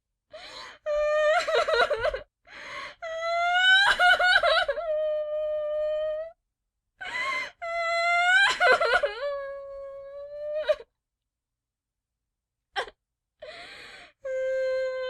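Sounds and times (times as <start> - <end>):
girl crying with wailing sobs: 0.8 - 2.3, 2.9 - 6.4, 7.1 - 10.9
breathy gasp: 2.5 - 3.0, 13.4 - 14.2.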